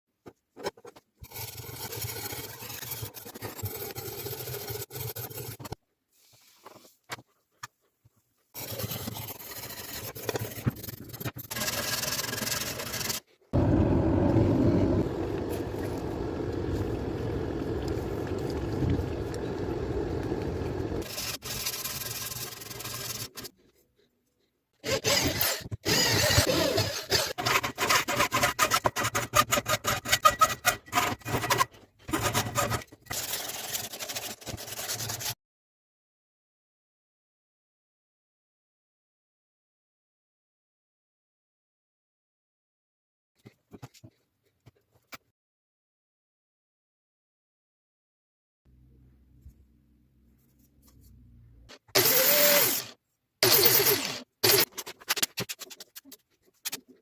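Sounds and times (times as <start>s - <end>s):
tools scraping and filing a blade: 0.2s - 7.8s, 8.5s - 13.5s, 21.0s - 24.2s, 24.8s - 35.4s, 52.0s - 57.0s.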